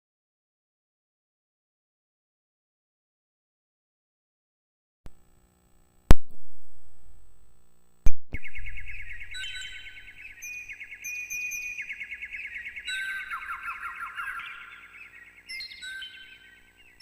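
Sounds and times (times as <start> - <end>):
birds chirping in trills: 8.4 - 17.0.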